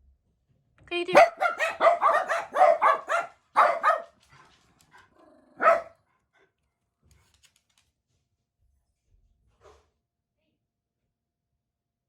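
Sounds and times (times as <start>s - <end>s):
dogs barking sharply: 1.1s - 4.2s, 5.5s - 6.0s.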